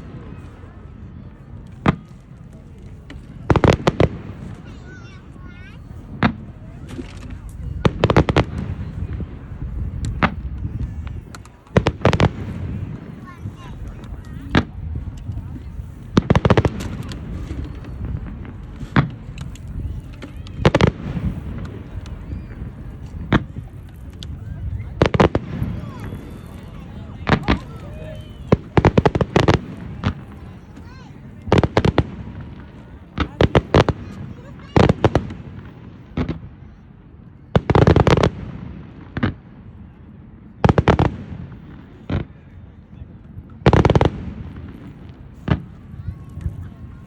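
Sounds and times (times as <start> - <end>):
fireworks bangs and cracks: 0.0 - 36.8, 37.4 - 47.0.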